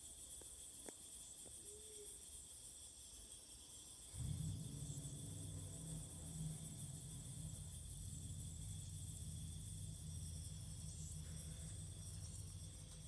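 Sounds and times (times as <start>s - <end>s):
faint low hum: 4.0s - 13.0s.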